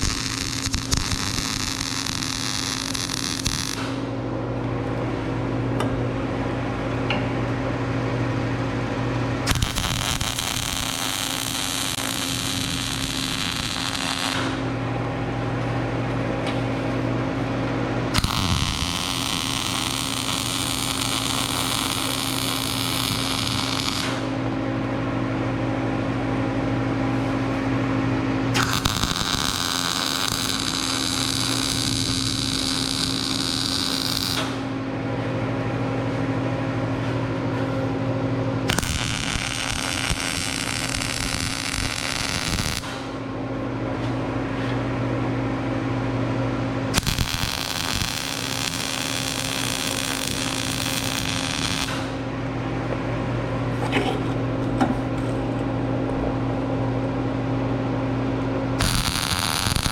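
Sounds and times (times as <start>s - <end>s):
arc welding crackling hiss: 0.0s - 4.0s, 9.5s - 14.6s, 18.2s - 24.3s, 28.6s - 34.7s, 38.7s - 43.1s, 46.9s - 52.2s, 58.8s - 59.9s
welding machine hum: 0.0s - 59.9s.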